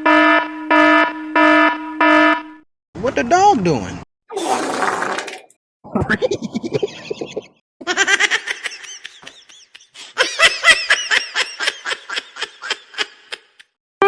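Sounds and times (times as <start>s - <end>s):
high-pitched laughter: 5.9s - 13.7s.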